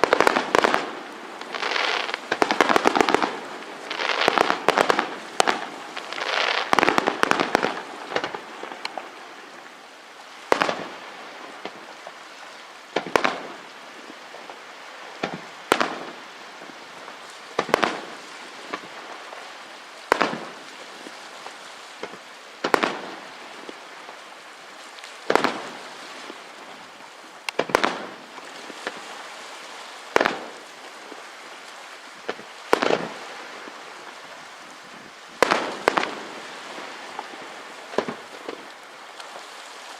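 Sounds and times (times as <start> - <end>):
crackling reports: 0.0 - 9.3.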